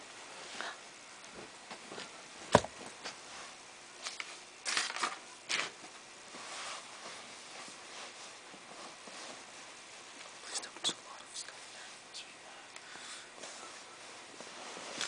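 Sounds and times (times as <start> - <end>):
rustling scratchy noises: 2.9 - 12.4, 13.4 - 15.0.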